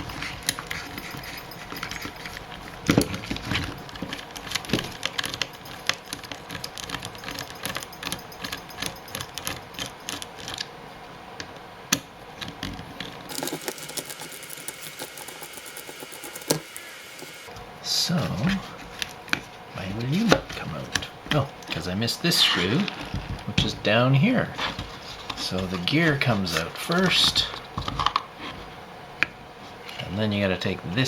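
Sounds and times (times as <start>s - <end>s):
small plastic parts rattling: 0.0s - 10.7s, 12.4s - 17.3s.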